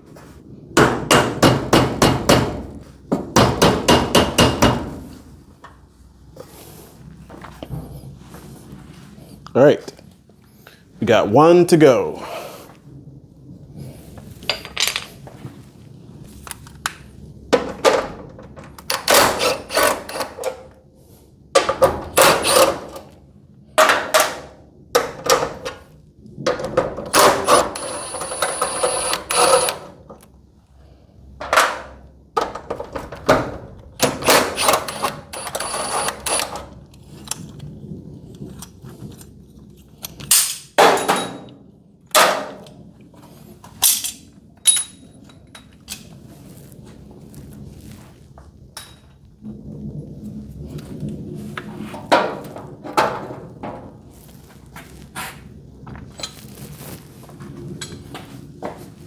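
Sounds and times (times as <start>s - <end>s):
metallic clanks and knocks: 52.0s - 54.0s.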